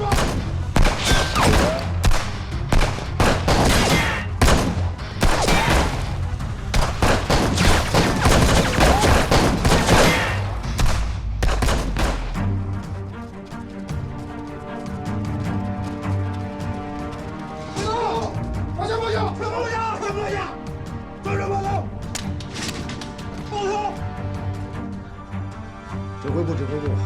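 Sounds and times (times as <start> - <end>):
rapid gunshots: 0.0 - 12.4
tense background music: 0.0 - 27.0.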